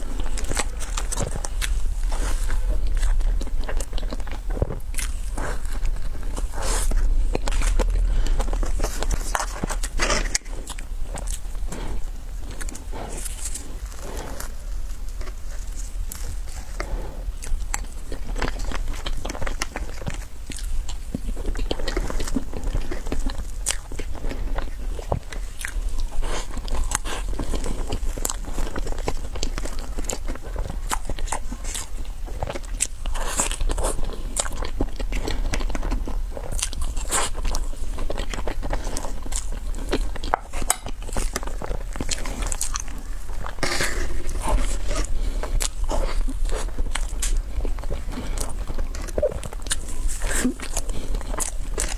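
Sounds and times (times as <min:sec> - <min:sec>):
crunchy dessert chewing: 0:00.0 - 0:51.9.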